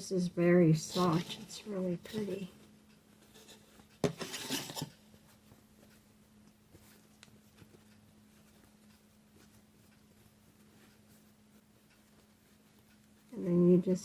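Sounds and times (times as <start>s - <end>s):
ribbon rustling: 0.9s - 13.7s
faint ticks: 4.9s - 14.0s.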